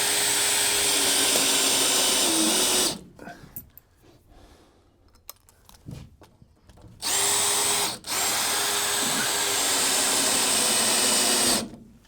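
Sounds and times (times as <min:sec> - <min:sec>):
power drill driving screws: 0:00.0 - 0:03.0, 0:07.0 - 0:11.7.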